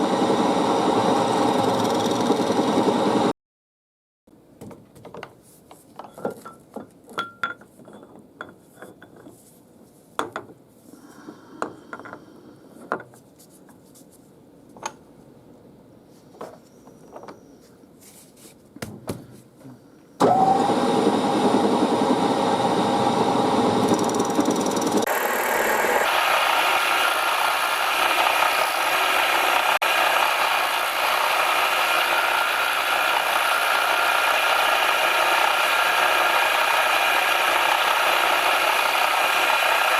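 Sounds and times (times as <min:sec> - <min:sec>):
metal tools clicking and knocking: 0:06.0 - 0:09.3
machine tool cutting brass: 0:21.2 - 0:39.9.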